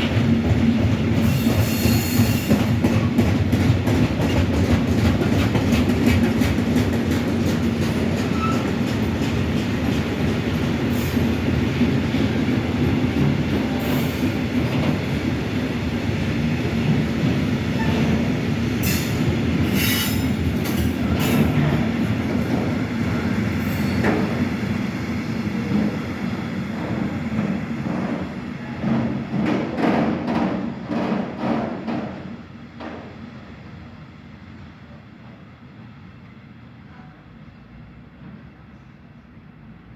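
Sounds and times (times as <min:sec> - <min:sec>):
high wheel squeals: 0:08.3 - 0:08.7.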